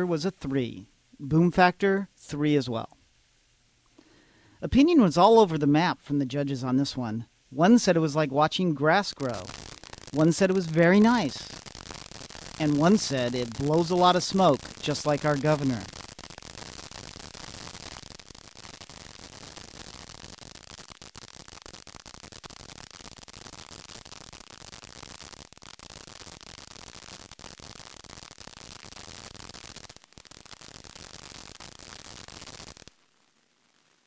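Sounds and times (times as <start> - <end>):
firework fountain hissing and crackling: 8.9 - 34.0.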